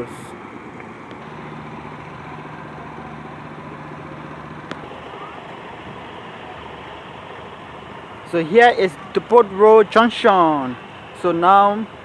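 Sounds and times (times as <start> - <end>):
road traffic: 0.0 - 12.0
low engine hum: 0.9 - 8.4.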